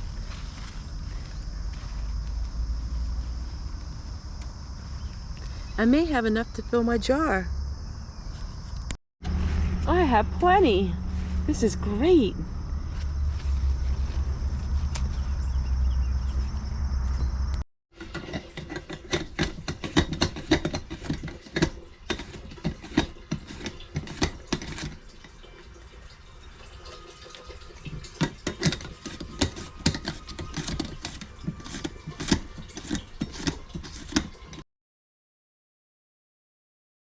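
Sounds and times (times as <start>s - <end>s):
objects clicking and knocking: 17.2s - 25.8s, 26.8s - 34.6s.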